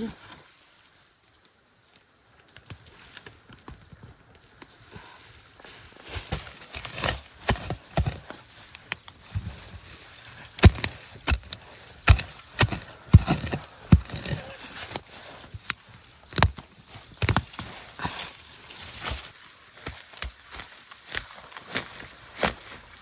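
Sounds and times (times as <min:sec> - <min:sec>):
blade chopping on wood: 0:10.5 - 0:15.0.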